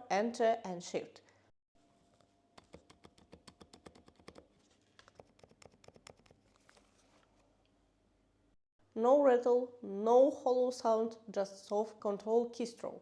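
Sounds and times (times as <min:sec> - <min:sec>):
quiet keyboard typing: 0:02.1 - 0:06.8.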